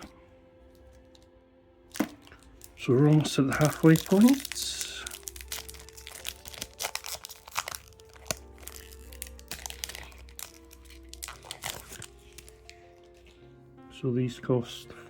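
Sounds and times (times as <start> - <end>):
soft background music: 0.0 - 15.0
wrapper crinkling: 1.9 - 13.4.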